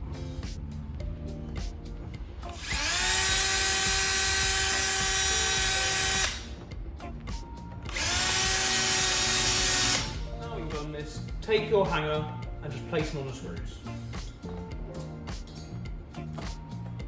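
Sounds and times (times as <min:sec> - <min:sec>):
background music: 0:00.0 - 0:17.0
power drill driving a screw: 0:02.5 - 0:06.5, 0:07.9 - 0:10.2.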